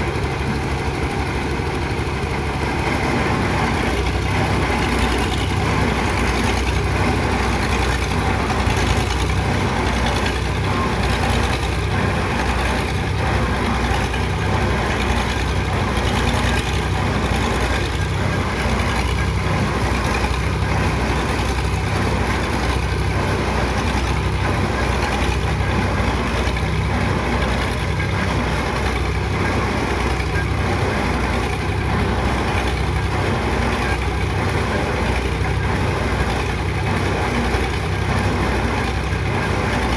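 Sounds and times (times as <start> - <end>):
heavy machine engine running: 0.0 - 39.9.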